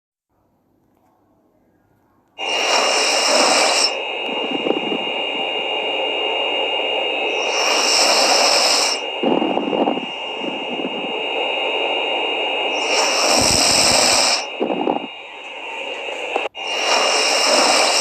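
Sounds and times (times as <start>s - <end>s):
person snoring: 2.4s - 5.1s, 7.3s - 11.2s, 12.7s - 18.0s.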